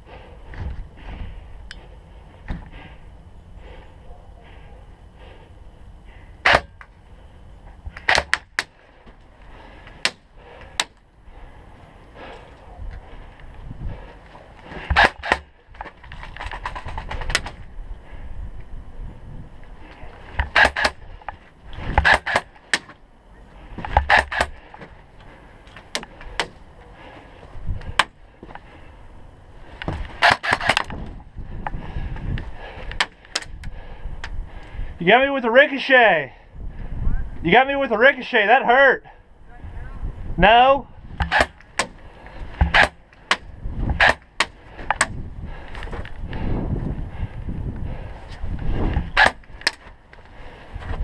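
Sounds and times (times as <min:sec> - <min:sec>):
airsoft gun shots: 0:06.4 - 0:06.8, 0:14.9 - 0:15.5, 0:41.2 - 0:42.0, 0:42.6 - 0:45.1, 0:49.1 - 0:49.4
airsoft guns firing: 0:06.4 - 0:06.8, 0:41.2 - 0:42.0.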